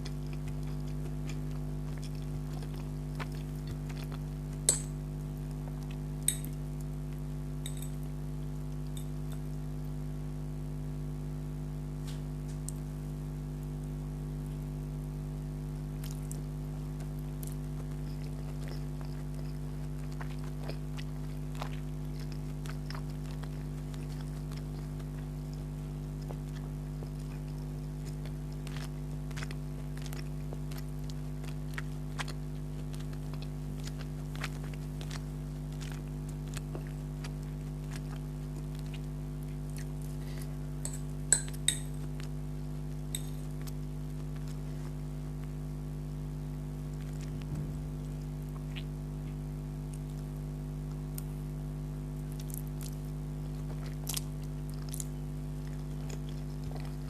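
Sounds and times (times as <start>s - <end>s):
soft chewing: 0.0s - 10.0s, 14.5s - 57.0s
steady electrical hum: 0.0s - 57.0s
metal fork clinking on plate: 7.6s - 8.0s, 40.9s - 42.0s.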